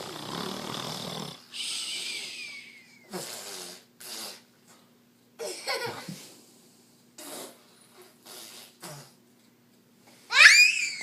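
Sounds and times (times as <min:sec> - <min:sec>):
man fake snoring: 0:00.0 - 0:01.4.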